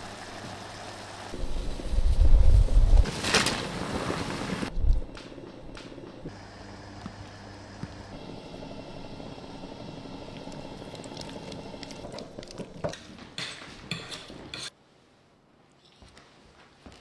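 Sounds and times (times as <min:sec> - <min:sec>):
low hum: 0:04.7 - 0:12.9.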